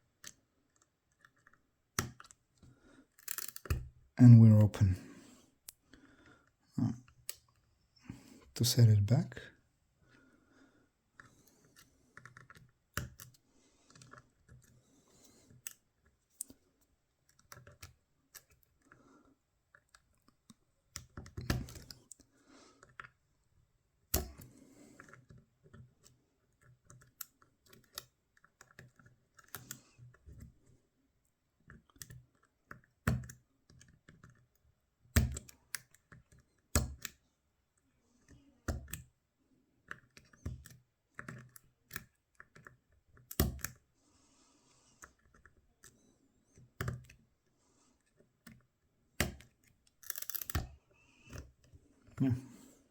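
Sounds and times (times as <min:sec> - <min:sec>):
lock picking clicks and scrapes: 0:00.2 - 0:03.9, 0:11.2 - 0:16.6, 0:17.3 - 0:19.0, 0:19.7 - 0:22.2, 0:24.1 - 0:30.5, 0:31.7 - 0:37.2, 0:39.8 - 0:43.8, 0:49.2 - 0:51.8.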